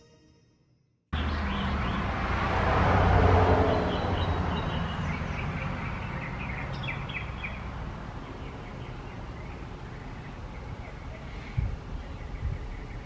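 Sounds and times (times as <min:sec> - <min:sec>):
small birds chirping: 0:01.2 - 0:02.2, 0:03.7 - 0:13.0.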